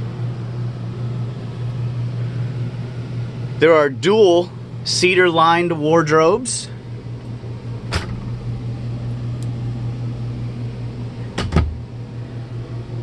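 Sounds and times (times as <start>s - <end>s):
low equipment hum: 0.0s - 13.0s
wardrobe doors knocking: 11.4s - 11.8s.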